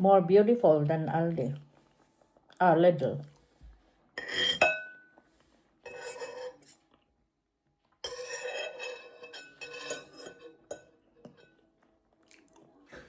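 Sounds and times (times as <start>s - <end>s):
cutlery scraping on plates: 4.2s - 5.1s, 5.8s - 6.9s, 8.0s - 11.6s.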